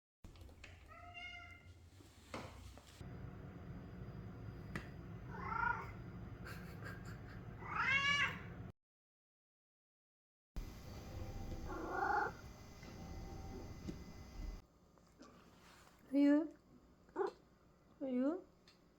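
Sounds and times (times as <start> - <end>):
cat meowing: 0.9 - 1.7, 5.3 - 5.9, 7.6 - 8.5, 11.0 - 13.8.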